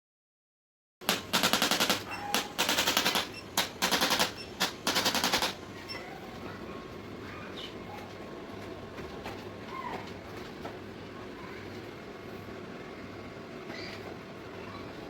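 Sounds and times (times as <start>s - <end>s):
rapid clicking rattle: 1.0s - 5.6s.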